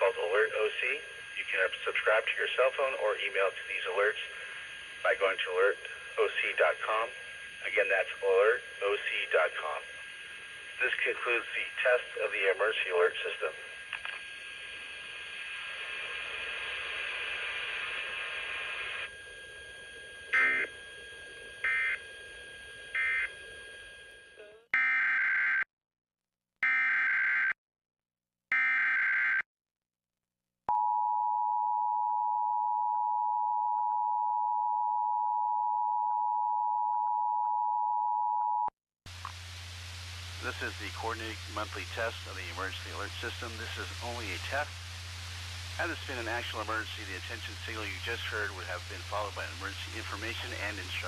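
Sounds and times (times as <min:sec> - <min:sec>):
screeching data bursts: 0:18.4 - 0:23.8
two-tone attention signal: 0:20.4 - 0:20.7
hiss: 0:39.1 - 0:51.0.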